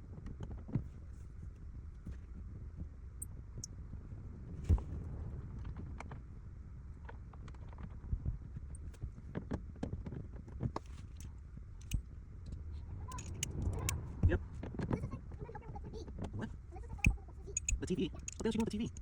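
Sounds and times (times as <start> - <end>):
light clicks and knocks of car parts: 10.8 - 14.0, 17.0 - 19.0.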